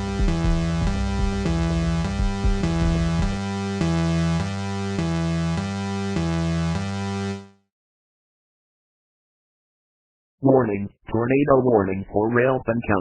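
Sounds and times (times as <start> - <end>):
low electronic beat: 0.0 - 4.5.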